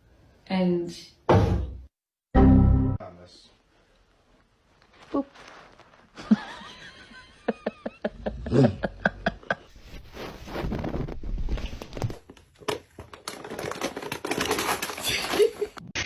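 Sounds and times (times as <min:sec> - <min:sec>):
crinkling rustling noise: 0:03.9 - 0:06.7, 0:09.7 - 0:15.9.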